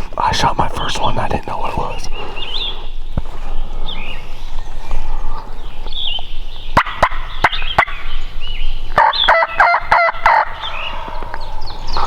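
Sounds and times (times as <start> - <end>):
songbirds chirping: 0.0 - 12.0
turkey gobbling: 6.8 - 8.1, 8.9 - 11.4.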